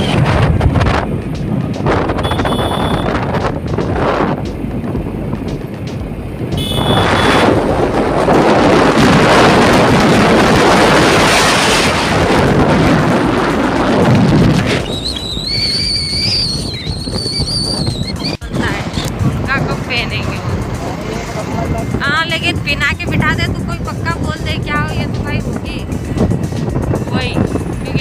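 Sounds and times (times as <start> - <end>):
wind rushing over microphone: 0.0 - 28.0
high wavering whistle tone: 14.8 - 18.4.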